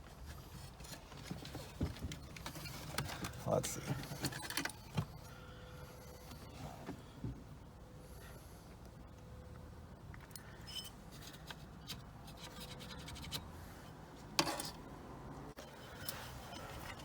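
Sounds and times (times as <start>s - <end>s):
metal adapter scraping and clicking: 10.3s - 13.5s.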